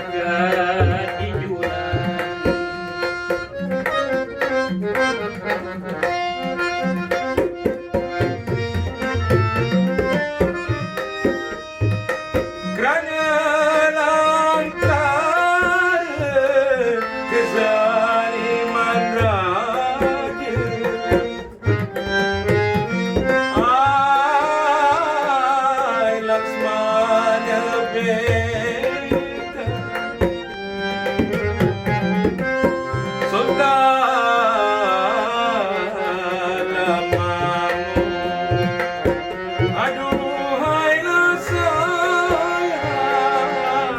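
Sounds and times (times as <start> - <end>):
reedy accompaniment: 0.0 - 43.9
tabla drumming: 0.0 - 43.9
person singing ornamented melody: 39.8 - 43.9.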